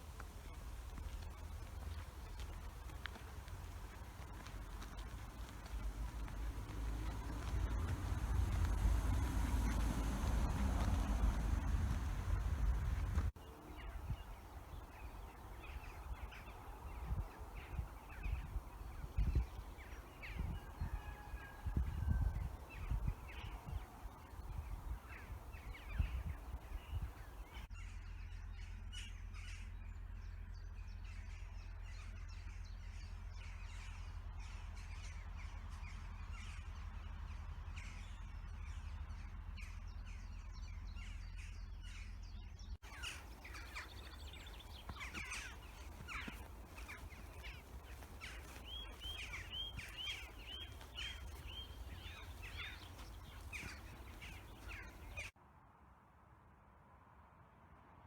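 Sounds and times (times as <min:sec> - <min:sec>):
wild birds calling: 0:00.0 - 0:27.7, 0:42.8 - 0:55.3
wind rumble on microphone: 0:00.0 - 0:27.7, 0:42.6 - 0:55.3.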